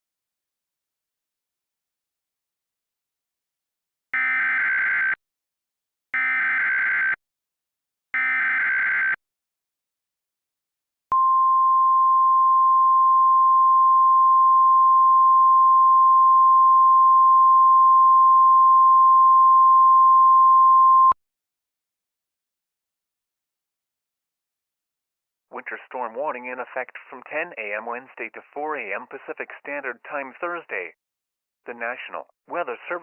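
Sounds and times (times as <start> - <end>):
steady high alarm tone: 4.2 - 5.2, 6.2 - 7.2, 8.2 - 9.2.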